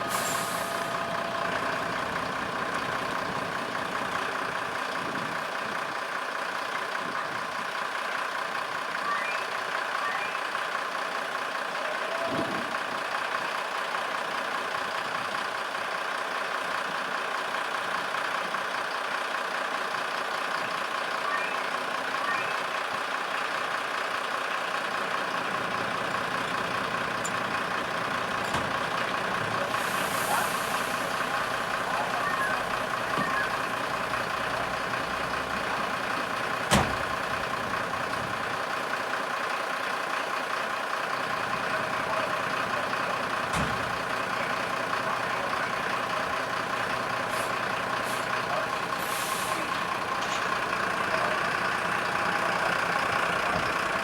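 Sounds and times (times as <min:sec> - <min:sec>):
short air hisses: 0:00.0 - 0:00.9, 0:29.8 - 0:31.1, 0:49.0 - 0:49.7
diesel engines idling: 0:00.0 - 0:54.0.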